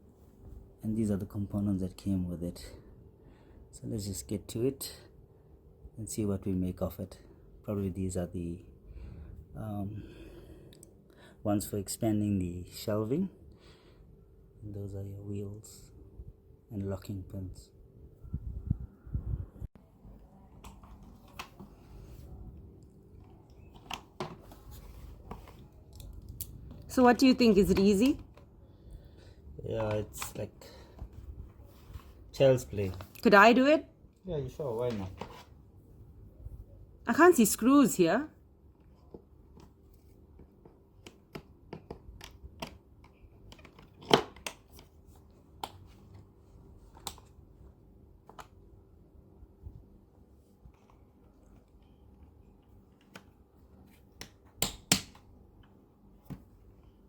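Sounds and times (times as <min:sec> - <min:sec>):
low steady hum: 0:00.0 - 0:57.0
plastic parts clicking and knocking: 0:40.4 - 0:44.9.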